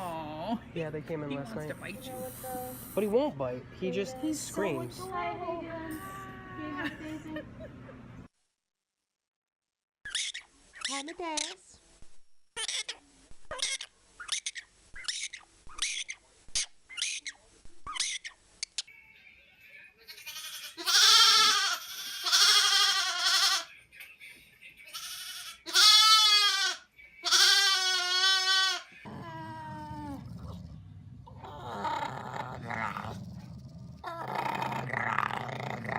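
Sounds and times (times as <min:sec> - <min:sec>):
goat bleating: 0:20.1 - 0:23.7, 0:24.9 - 0:28.9.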